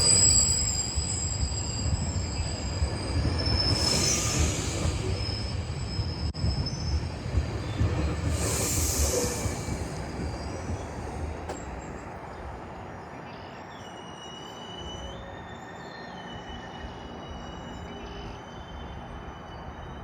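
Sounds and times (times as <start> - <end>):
wheel or brake squeals: 0.0 - 7.0
train rumbling: 0.0 - 20.0
high hiss: 8.2 - 10.6.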